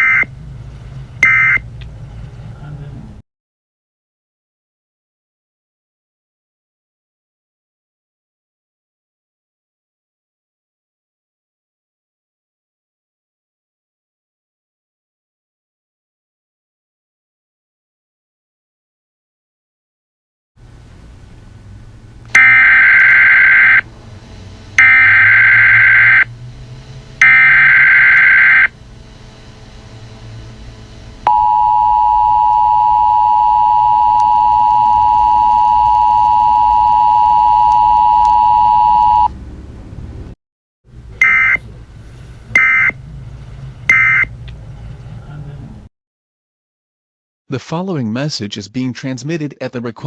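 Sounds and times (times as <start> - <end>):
two-tone attention signal: 22.4 - 23.8, 24.8 - 26.3, 27.2 - 28.7, 31.3 - 39.3, 41.2 - 41.6, 42.6 - 43.0, 43.9 - 44.3
data bursts: 24.8 - 26.3, 27.2 - 28.7, 41.2 - 41.6.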